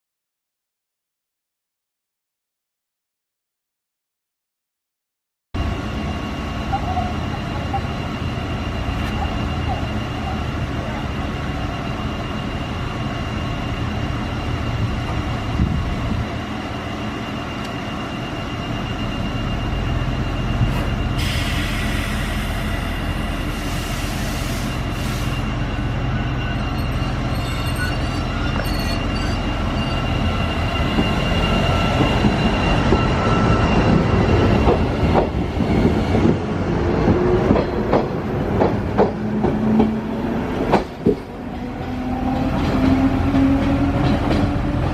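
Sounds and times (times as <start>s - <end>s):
electric train high-pitched squeal: 5.6s - 37.3s.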